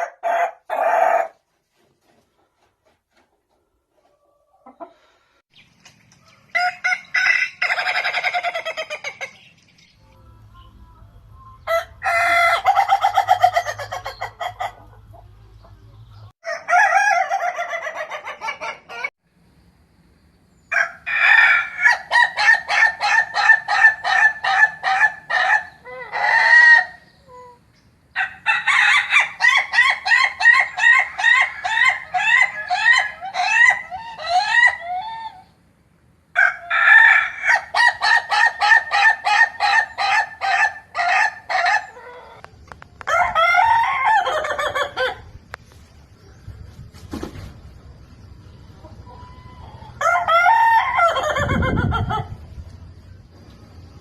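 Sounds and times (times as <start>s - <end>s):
roosters crowing: 0.0s - 1.4s, 6.4s - 9.5s, 11.6s - 15.4s, 16.1s - 19.1s, 20.7s - 45.7s, 48.4s - 53.2s.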